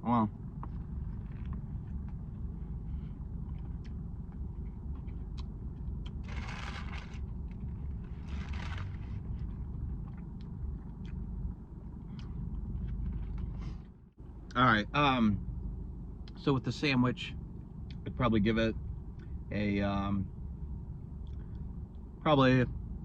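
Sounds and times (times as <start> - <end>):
car engine idling: 0.0 - 23.0
rustling: 6.2 - 9.6.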